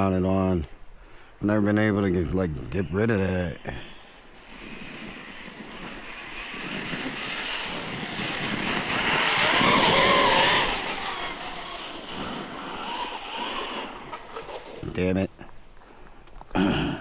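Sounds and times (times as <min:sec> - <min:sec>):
tyres hissing on road: 0:03.5 - 0:14.2
electric motor whining: 0:04.3 - 0:15.0.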